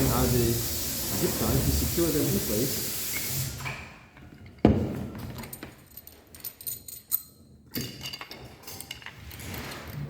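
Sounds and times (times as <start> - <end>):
metal hardware clinks and taps: 4.2 - 10.0.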